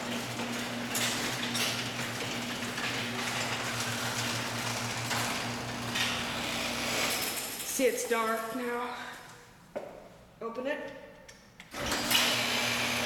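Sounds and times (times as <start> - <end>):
garage door motor hum: 0.0 - 7.8, 11.7 - 13.0
garage door rattling: 0.0 - 7.9.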